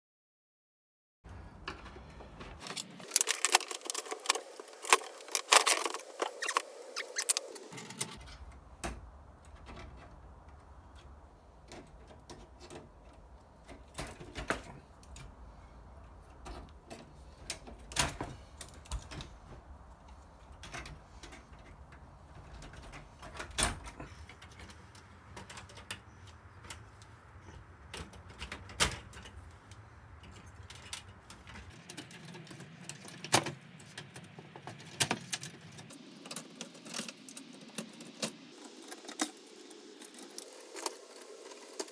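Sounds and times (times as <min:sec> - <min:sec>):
metal tools clinking: 0:02.4 - 0:08.2.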